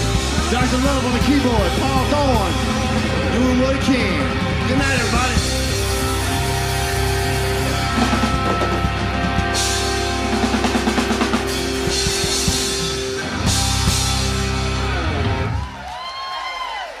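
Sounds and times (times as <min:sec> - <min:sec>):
fast drum roll: 0:00.0 - 0:03.3, 0:04.7 - 0:14.7
guitar and keyboard chords: 0:00.0 - 0:15.8.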